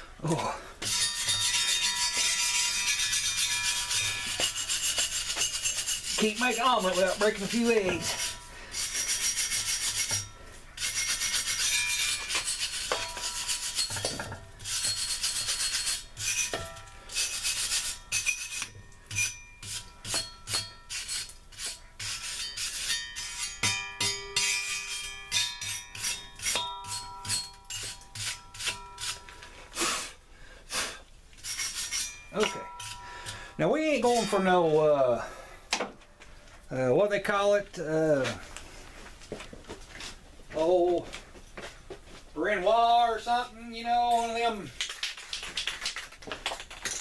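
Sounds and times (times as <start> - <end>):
scrubbing by hand: 2.1 - 10.2.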